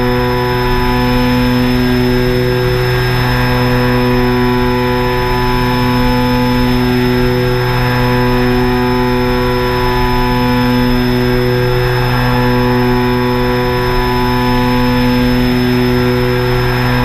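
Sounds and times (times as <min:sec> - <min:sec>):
drone propellers humming: 0:00.0 - 0:17.0.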